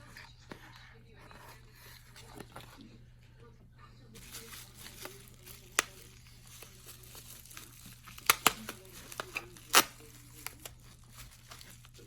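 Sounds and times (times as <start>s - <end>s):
packaging crinkling and rustling: 4.2s - 12.0s.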